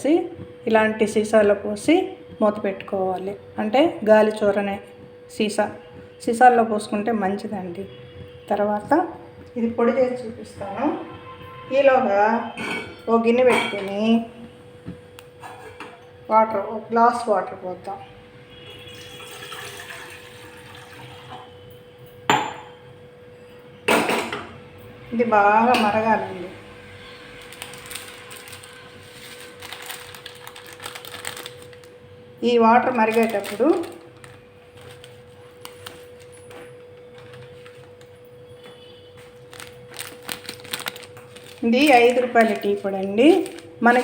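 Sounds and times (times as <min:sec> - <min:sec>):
water pouring into a pot: 0:18.9 - 0:21.5.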